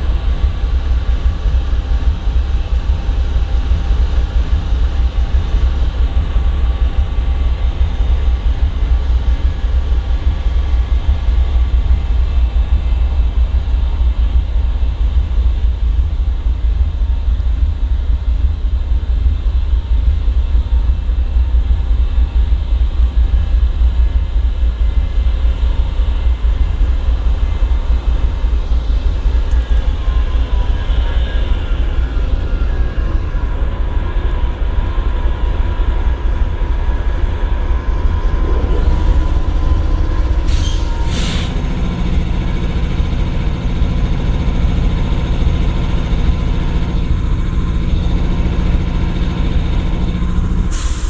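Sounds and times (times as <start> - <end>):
diesel locomotive idling: 19.0 - 51.0.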